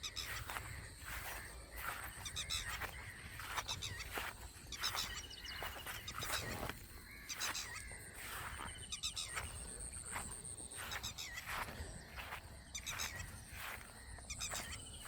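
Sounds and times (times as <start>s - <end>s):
birds chirping and calling: 0.0s - 15.0s.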